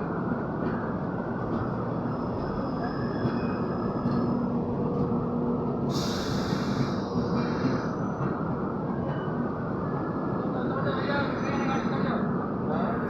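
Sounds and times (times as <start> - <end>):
passenger train rumbling: 0.0 - 13.0
hiss: 5.9 - 7.9.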